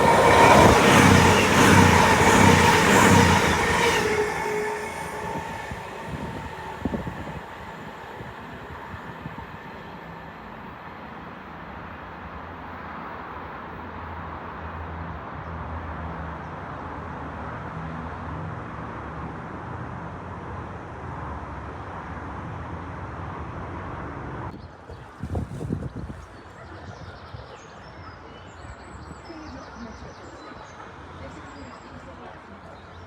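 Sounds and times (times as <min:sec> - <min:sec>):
diesel train engine rumble: 0:00.0 - 0:24.5.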